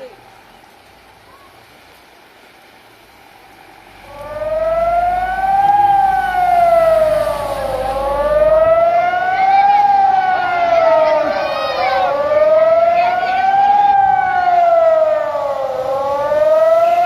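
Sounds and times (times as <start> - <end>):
warning siren wailing: 3.9 - 17.0.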